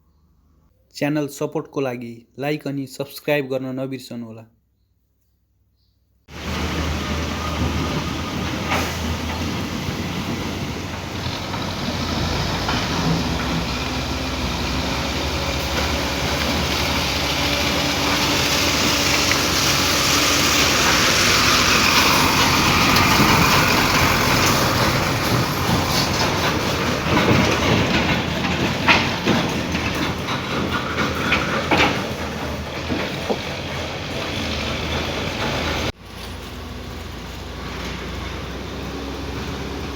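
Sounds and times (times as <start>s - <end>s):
heavy road vehicle rumble: 6.3s - 39.9s
sharp knocks: 25.4s - 33.7s.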